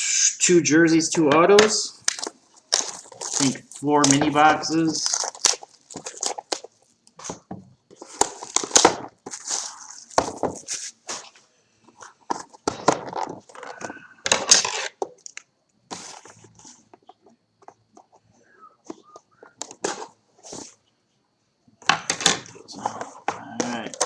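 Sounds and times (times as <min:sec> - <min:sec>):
packaging crinkling and rustling: 0:01.6 - 0:11.4.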